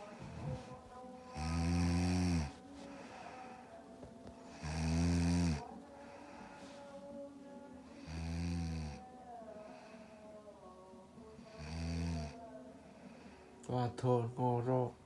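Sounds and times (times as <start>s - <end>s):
person snoring: 0.0s - 3.7s, 4.5s - 6.6s, 7.9s - 10.2s, 11.4s - 13.3s.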